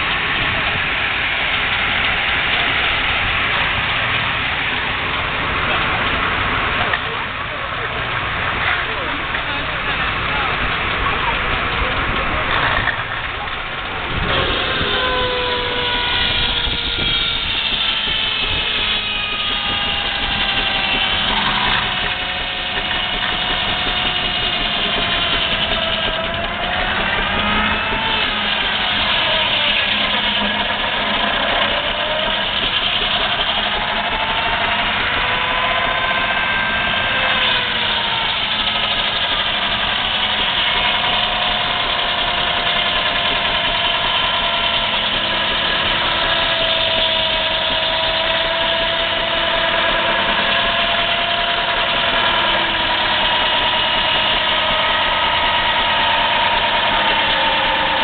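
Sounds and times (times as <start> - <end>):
engine-driven saw whining: 0.0 - 58.0.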